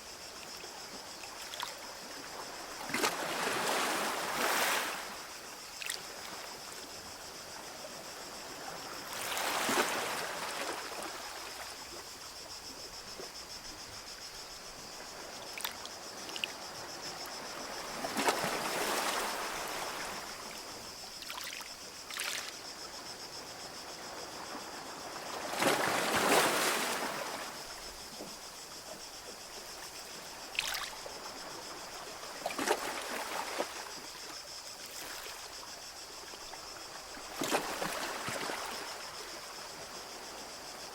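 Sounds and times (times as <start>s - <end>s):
small waves breaking on shore: 1.2s - 29.0s, 29.6s - 40.9s
water splashes: 9.1s - 11.6s, 21.2s - 22.6s, 30.5s - 31.3s, 37.3s - 39.3s.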